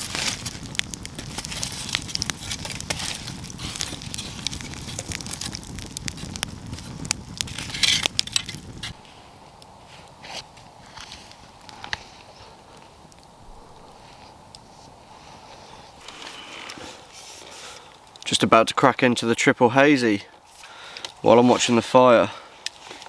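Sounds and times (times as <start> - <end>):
campfire crackling and popping: 0.0 - 23.0
low rumble: 13.3 - 15.4.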